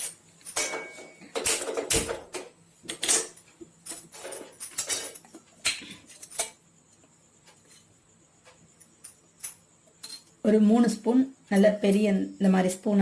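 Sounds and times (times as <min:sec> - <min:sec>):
pots and pans knocking and clinking: 0:00.0 - 0:03.4.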